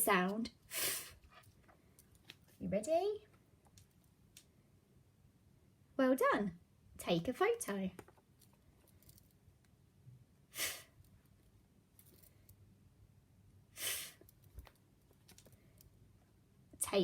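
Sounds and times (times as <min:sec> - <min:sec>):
quiet room hum: 0:00.0 - 0:17.0
woman making breathy hisses: 0:00.7 - 0:01.2, 0:10.5 - 0:11.0, 0:13.8 - 0:14.2.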